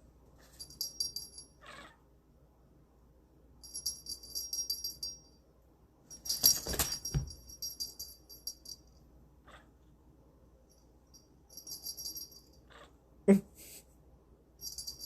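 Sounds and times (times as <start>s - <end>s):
cat toy jingling: 6.1s - 8.9s, 11.5s - 12.6s, 14.6s - 15.0s.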